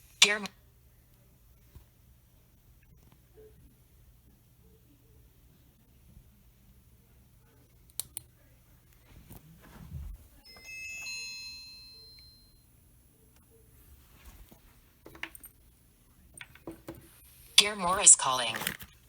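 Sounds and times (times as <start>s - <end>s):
electronic ring chime: 10.4s - 12.6s.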